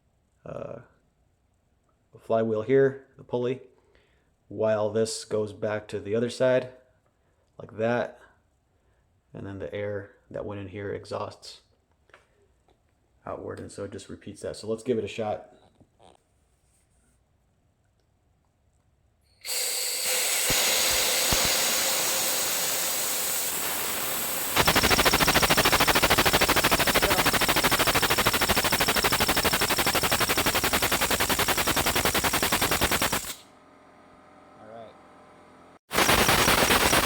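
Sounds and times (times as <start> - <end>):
compressed air hissing: 19.4 - 33.4
air motor chattering: 20.1 - 33.4, 35.9 - 37.0.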